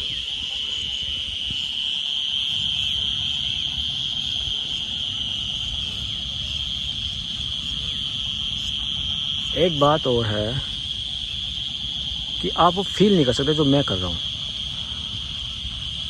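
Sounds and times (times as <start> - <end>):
high-pitched insect chorus: 0.0 - 16.0.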